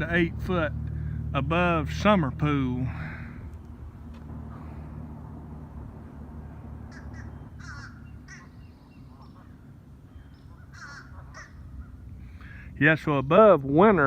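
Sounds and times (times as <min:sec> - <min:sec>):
low background rumble: 0:00.0 - 0:14.0
crows cawing: 0:06.9 - 0:09.6, 0:10.5 - 0:12.0.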